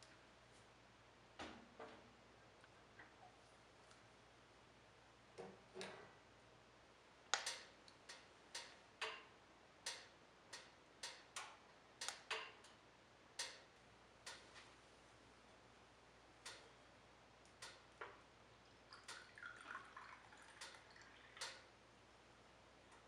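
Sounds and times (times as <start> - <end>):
light sharp clicks and taps: 7.3 - 12.8, 13.4 - 14.7, 16.4 - 16.8, 17.4 - 18.2.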